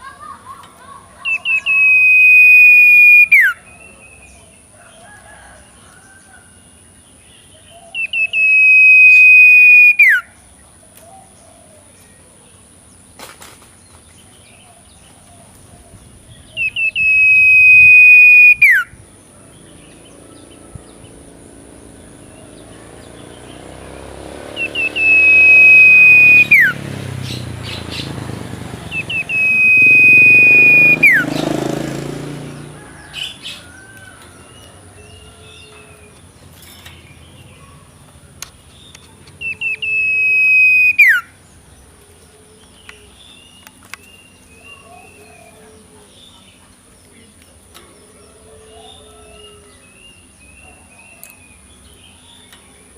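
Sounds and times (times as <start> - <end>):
bird long whistled calls: 1.2 - 4.0, 7.9 - 10.4, 16.5 - 19.0, 24.6 - 28.0, 28.9 - 31.5, 39.4 - 41.4.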